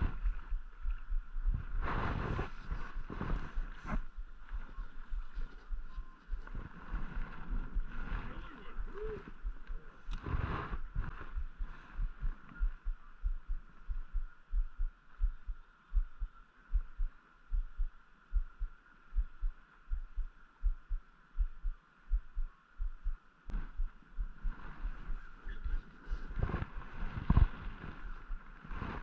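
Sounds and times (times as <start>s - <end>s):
low thuds: 8.8s - 25.4s.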